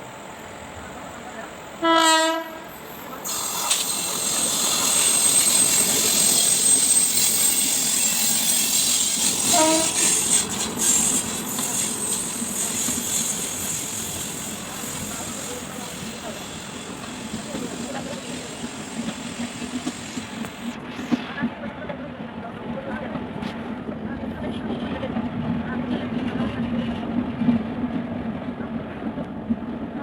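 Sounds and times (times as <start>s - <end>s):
train coaches running on track: 0.0s - 30.0s
locomotive horn blast: 1.8s - 2.7s, 9.4s - 10.1s.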